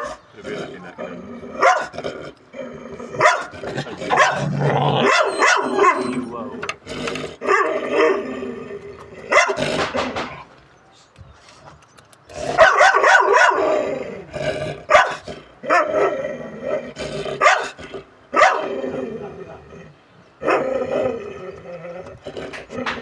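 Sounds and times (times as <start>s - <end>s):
dog barking: 0.0s - 0.2s, 1.6s - 1.9s, 3.2s - 3.5s, 4.1s - 6.3s, 7.4s - 8.2s, 9.3s - 9.9s, 12.5s - 13.8s, 14.9s - 16.1s, 17.4s - 18.8s, 20.4s - 20.7s.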